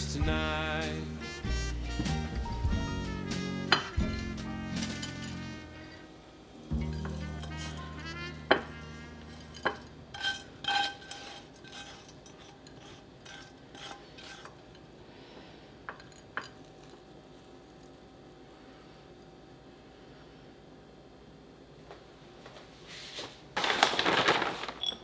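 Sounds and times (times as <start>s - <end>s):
utensils clinking against cookware: 0.0s - 15.0s, 15.8s - 17.1s.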